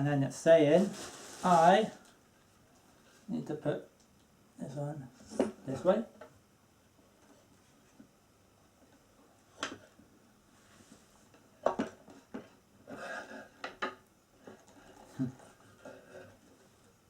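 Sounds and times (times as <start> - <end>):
rustling scrape: 0.7 - 2.1, 10.5 - 11.3
chair parts knocking and clattering: 11.6 - 12.6, 13.6 - 15.2.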